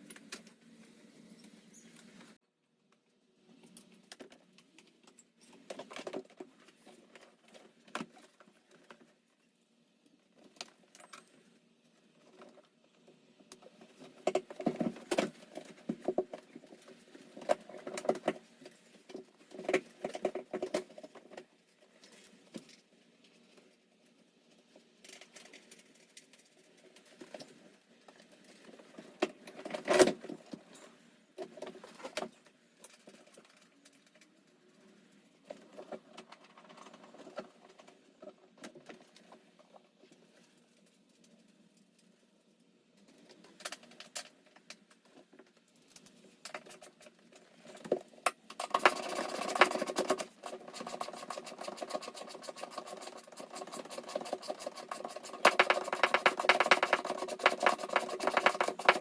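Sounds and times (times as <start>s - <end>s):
tools clicking and rattling: 47.7s - 59.0s.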